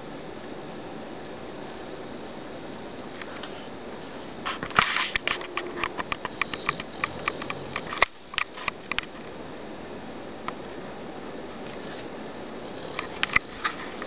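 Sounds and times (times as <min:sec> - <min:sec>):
steady hiss: 0:00.0 - 0:14.0
dog snoring in sharp clicks: 0:04.6 - 0:09.1, 0:11.7 - 0:14.0.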